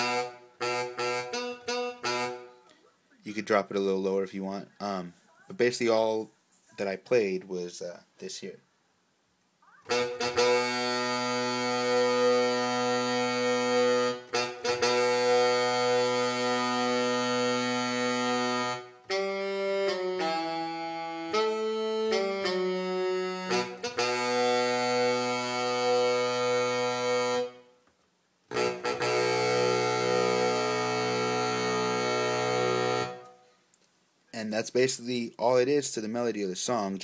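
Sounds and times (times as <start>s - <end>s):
sampled horn section melody: 0.0s - 2.6s, 9.8s - 27.8s, 28.5s - 33.5s.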